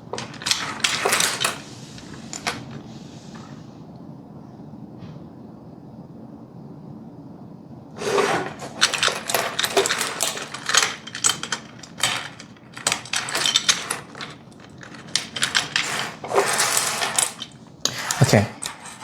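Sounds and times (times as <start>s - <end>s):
curtain gliders clattering: 0.0s - 2.7s, 8.0s - 19.0s.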